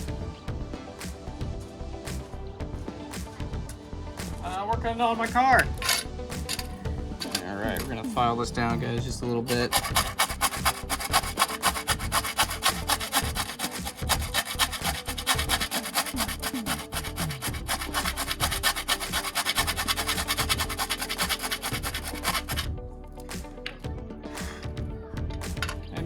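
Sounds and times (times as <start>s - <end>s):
hand file rasping on metal: 9.2s - 22.8s.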